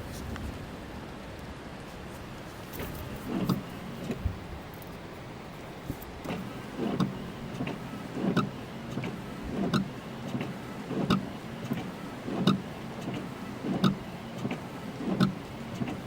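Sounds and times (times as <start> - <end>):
windscreen wipers sweeping: 1.9 - 16.0.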